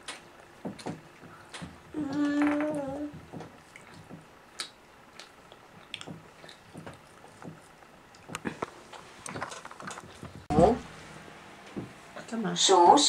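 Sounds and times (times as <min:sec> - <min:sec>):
soft eating sounds: 0:00.0 - 0:10.5.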